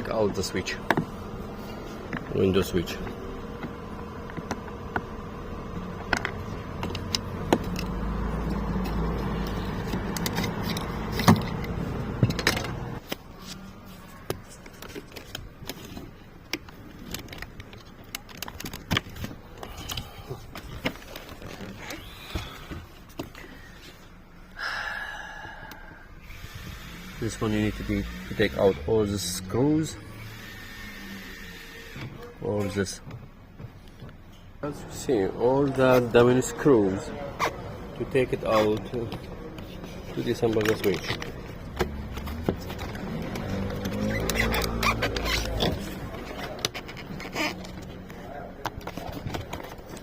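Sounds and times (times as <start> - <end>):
steady hum: 0.0 - 13.9.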